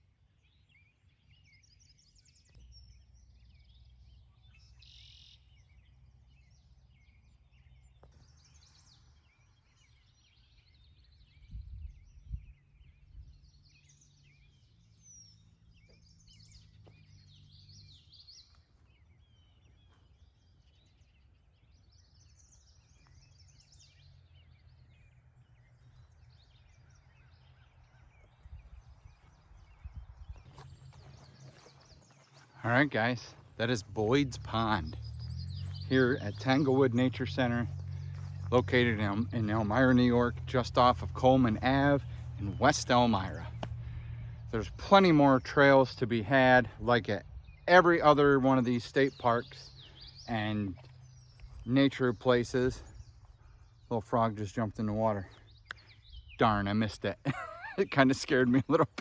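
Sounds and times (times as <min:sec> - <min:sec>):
birds chirping and trilling: 0:00.0 - 0:59.0
low steady rumble: 0:22.0 - 0:56.8
low bumps: 0:30.4 - 0:53.6.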